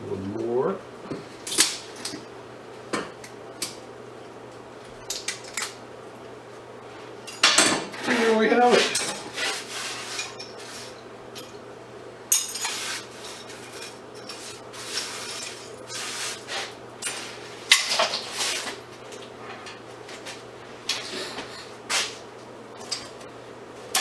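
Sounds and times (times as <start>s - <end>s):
steady low hum: 0.0s - 24.0s
scrap metal clinking: 7.3s - 11.6s, 12.3s - 18.4s.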